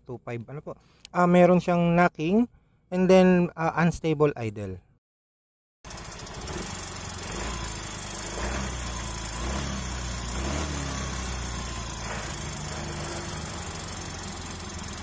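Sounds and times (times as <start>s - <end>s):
scooter engine idling with knocking: 5.9s - 8.2s, 11.4s - 15.0s.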